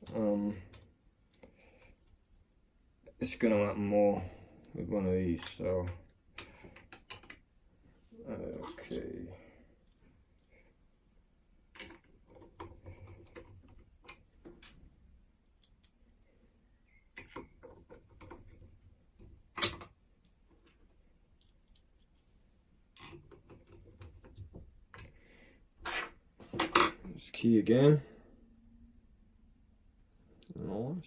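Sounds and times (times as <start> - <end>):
metallic clicks of lock parts: 15.4 - 16.0, 19.5 - 20.0, 21.4 - 22.1.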